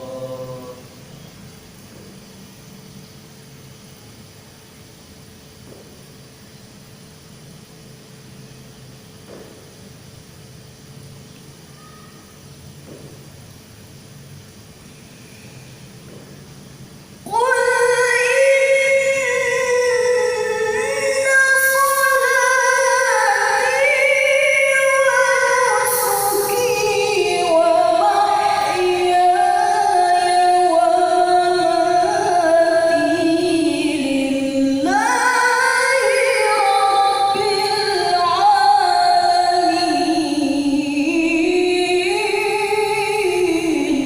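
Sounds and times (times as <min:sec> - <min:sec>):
woman reciting in sung style: 0:00.0 - 0:02.1, 0:17.2 - 0:44.0.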